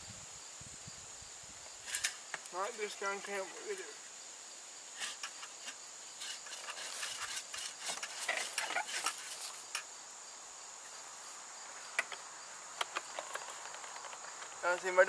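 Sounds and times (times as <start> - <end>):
insects droning: 0.0 - 15.0
rustling: 4.9 - 10.0, 12.8 - 15.0.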